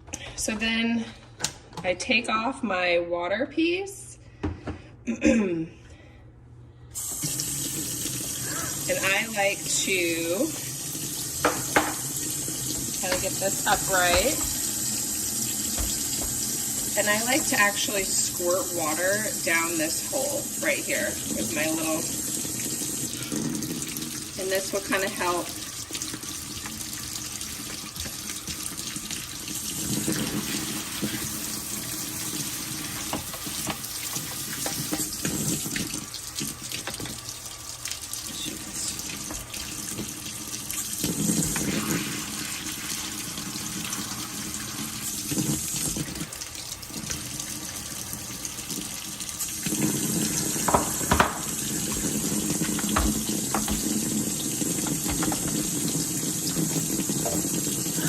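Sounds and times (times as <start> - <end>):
water running and splashing: 7.0 - 58.0.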